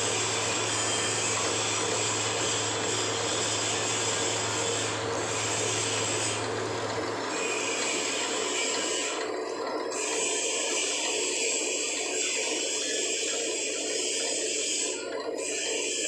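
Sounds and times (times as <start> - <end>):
machinery hiss: 0.0 - 9.1.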